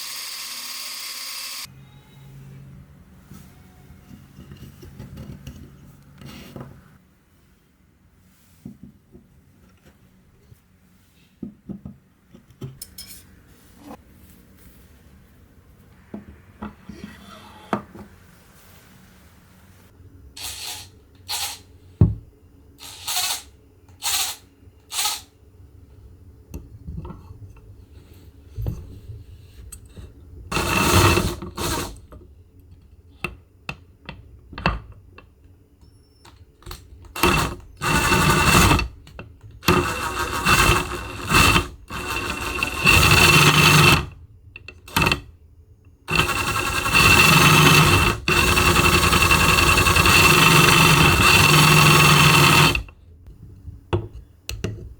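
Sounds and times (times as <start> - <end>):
metal gears whining: 20.4 - 21.7, 22.8 - 25.3.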